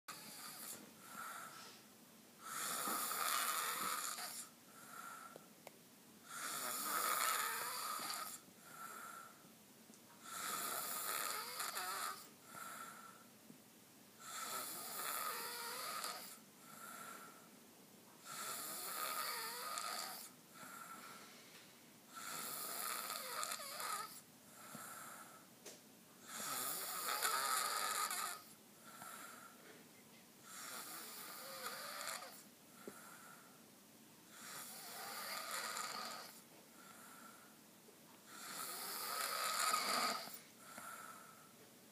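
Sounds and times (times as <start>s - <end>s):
man snoring: 0.1s - 1.5s, 2.4s - 5.4s, 6.3s - 9.3s, 10.2s - 13.2s, 14.2s - 17.4s, 18.2s - 21.0s, 22.1s - 25.4s, 26.2s - 29.6s, 30.4s - 33.4s, 34.3s - 37.4s, 38.3s - 41.4s.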